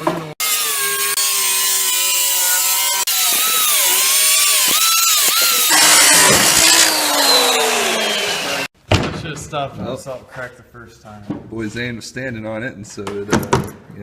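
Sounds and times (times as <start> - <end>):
power saw cutting plastic sheet: 0.0 - 8.8.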